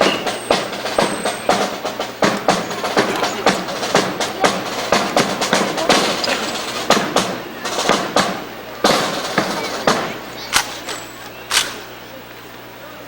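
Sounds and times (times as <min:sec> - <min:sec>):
rifles clacking: 0:00.6 - 0:07.0, 0:08.9 - 0:11.9.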